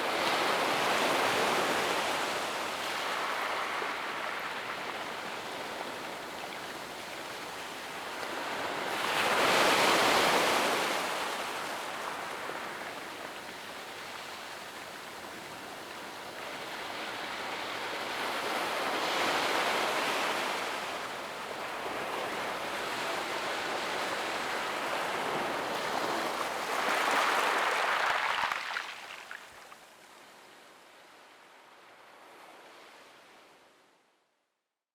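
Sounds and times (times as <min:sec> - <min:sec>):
small waves washing up beach: 0:00.0 - 0:30.6
surf surges: 0:18.6 - 0:29.8.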